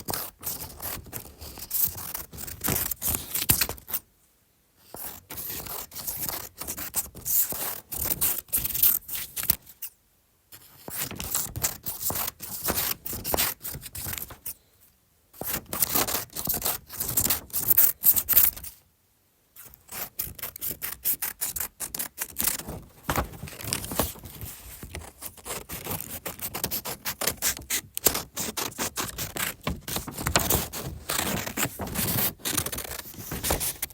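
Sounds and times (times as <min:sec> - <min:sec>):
scissors cutting paper: 0:19.9 - 0:33.9.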